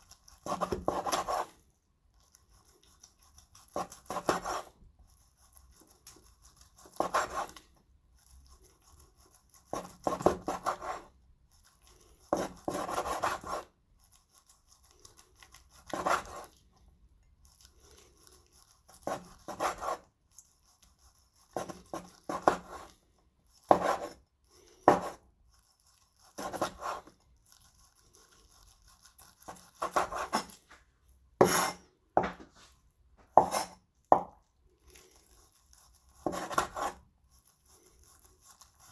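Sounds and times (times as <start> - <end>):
knife cutting on chopping board: 23.7 - 24.2, 24.9 - 25.2, 29.6 - 30.6, 31.4 - 32.5, 33.3 - 34.4, 36.2 - 37.0.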